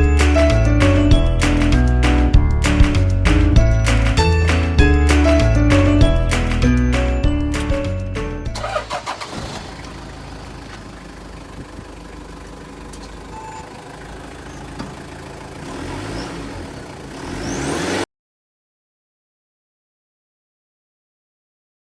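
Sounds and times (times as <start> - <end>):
car engine revving: 8.6 - 18.1.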